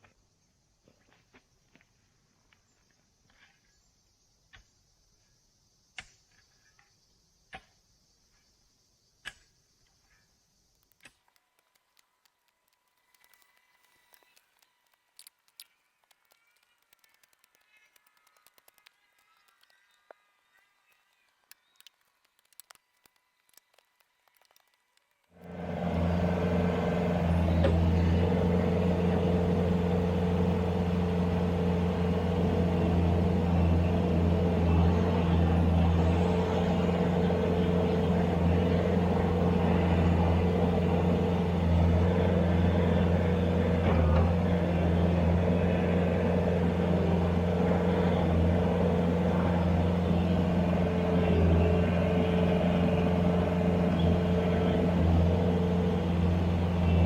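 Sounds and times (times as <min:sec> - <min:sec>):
loader engine droning: 0:25.2 - 0:57.0.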